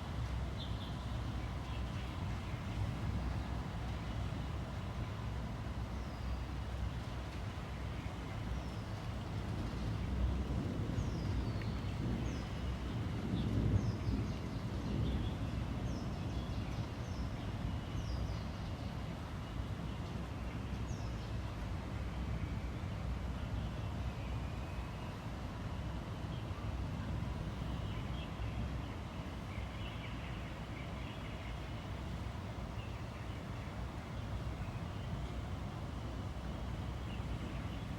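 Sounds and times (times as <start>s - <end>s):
rain hiss: 0.0s - 37.9s
distant traffic rumble: 27.2s - 37.9s.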